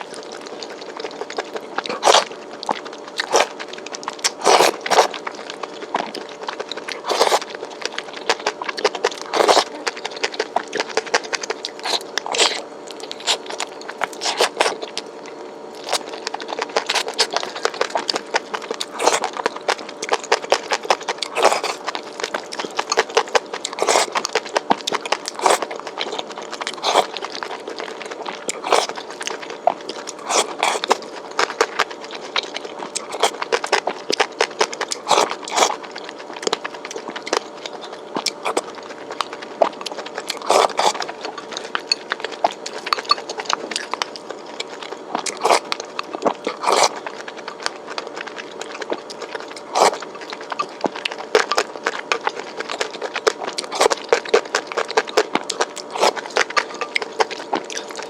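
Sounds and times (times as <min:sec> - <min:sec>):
crunchy food chewing: 0:00.0 - 0:58.0.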